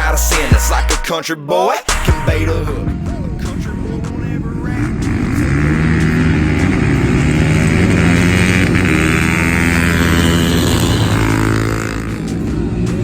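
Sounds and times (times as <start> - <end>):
vehicle engine revving high: 3.6 - 13.0.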